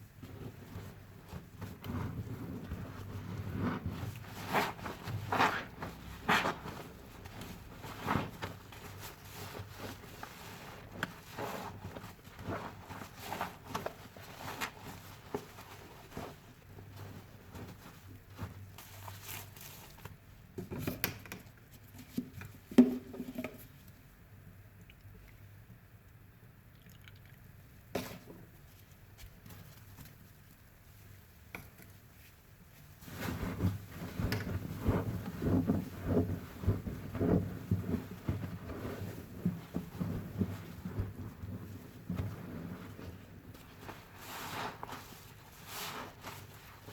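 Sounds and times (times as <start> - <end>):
wet sponge squishing: 0.2 - 20.2, 32.0 - 46.9.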